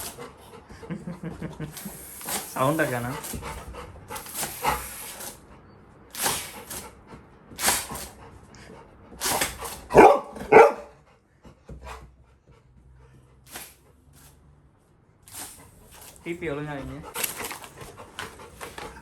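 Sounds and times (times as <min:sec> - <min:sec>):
puppy barking: 0:09.9 - 0:11.0.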